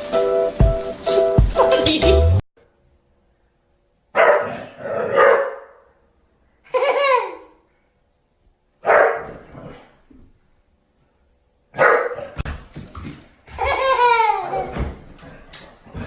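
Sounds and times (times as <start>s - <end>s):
dog barking: 4.1s - 5.9s, 8.8s - 9.4s, 11.7s - 12.4s.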